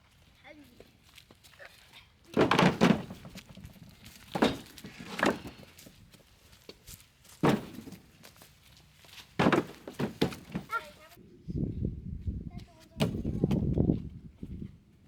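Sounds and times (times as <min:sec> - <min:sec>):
firewood knocking on a stack: 0:02.4 - 0:03.5, 0:04.3 - 0:05.6, 0:07.4 - 0:08.0, 0:09.4 - 0:10.8.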